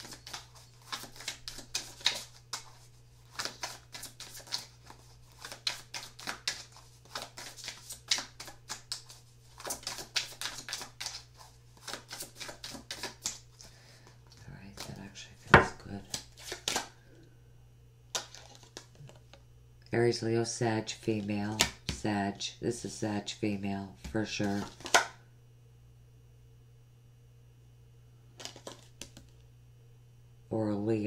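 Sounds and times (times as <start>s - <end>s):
cards being shuffled: 0.0s - 16.9s, 18.1s - 19.2s, 24.0s - 25.2s, 28.4s - 29.4s.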